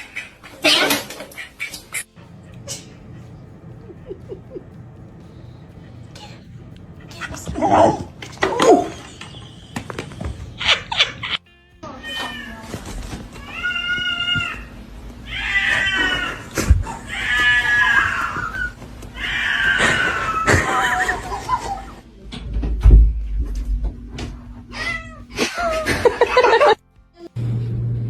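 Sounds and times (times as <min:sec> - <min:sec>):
cat meowing: 0:10.6 - 0:21.5, 0:24.7 - 0:25.9.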